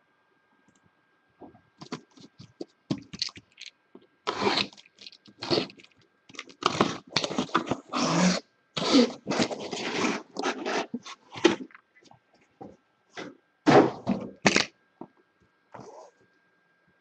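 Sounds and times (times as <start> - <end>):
packaging rustling and tearing: 1.8 - 3.7, 4.3 - 11.7.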